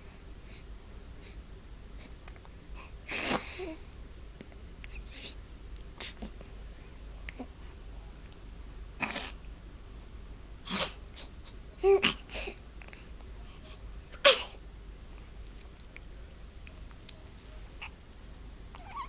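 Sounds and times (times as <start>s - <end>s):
baby sneezing: 3.1s - 3.7s, 9.0s - 9.4s, 10.6s - 12.6s, 14.2s - 14.6s.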